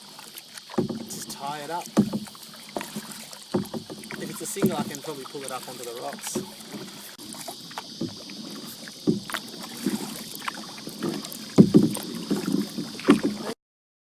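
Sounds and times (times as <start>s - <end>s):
paddle splashing in water: 0.0s - 13.6s
sharp knocks: 0.7s - 5.0s, 9.0s - 9.4s, 11.6s - 12.0s.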